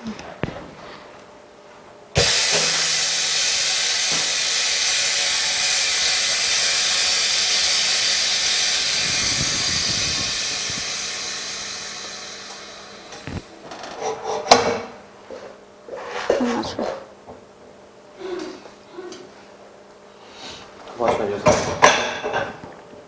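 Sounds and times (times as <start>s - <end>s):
compressed air hissing: 2.2s - 13.6s.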